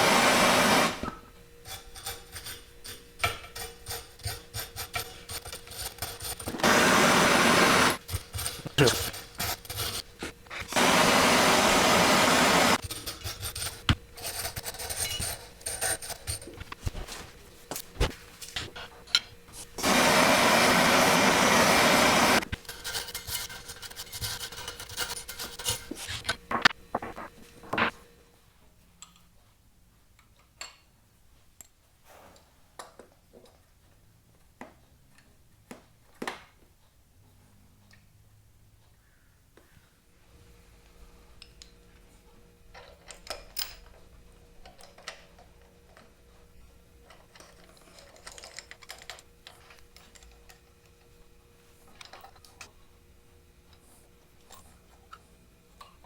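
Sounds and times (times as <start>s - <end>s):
steady hiss: 8.6s - 12.8s, 19.6s - 22.4s
metal parts clicking and tapping: 47.0s - 51.0s.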